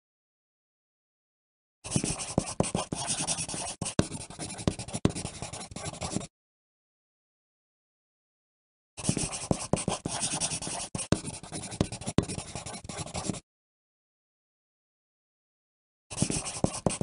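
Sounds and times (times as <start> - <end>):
pencil writing on paper: 1.9 - 6.3, 9.0 - 13.4, 16.1 - 17.0.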